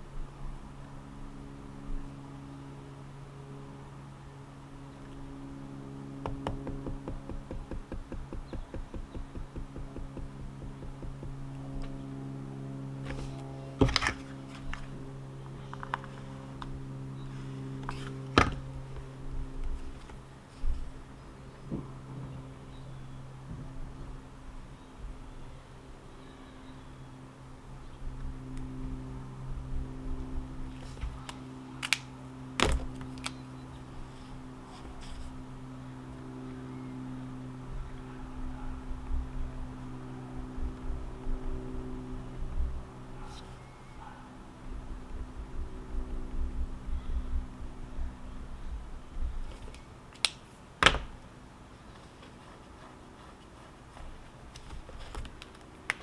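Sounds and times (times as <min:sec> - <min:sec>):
low pulsing hum: 0:00.0 - 0:49.8
sharp knocks: 0:06.2 - 0:11.6
sharp clicks and taps: 0:06.2 - 0:11.9.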